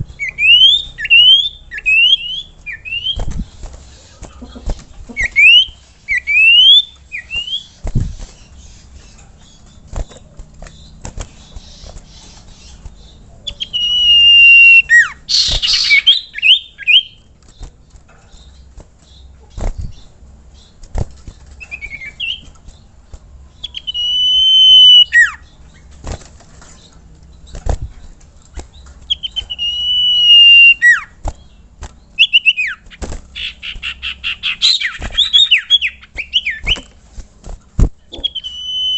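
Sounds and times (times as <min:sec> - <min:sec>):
bird whistling: 0:00.0 - 0:03.4, 0:05.2 - 0:07.8, 0:11.5 - 0:17.2, 0:21.6 - 0:22.5, 0:23.6 - 0:25.5, 0:29.1 - 0:31.2, 0:32.2 - 0:36.9, 0:38.1 - 0:38.9.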